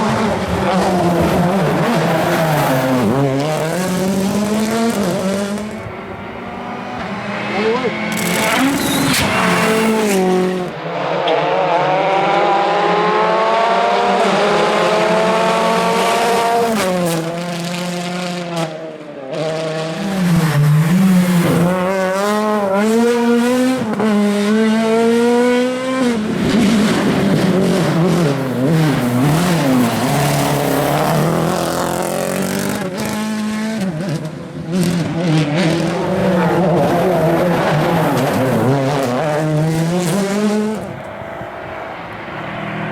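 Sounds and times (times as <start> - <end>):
rally car engines at full throttle: 0.0 - 42.9
tyre noise: 0.1 - 10.7.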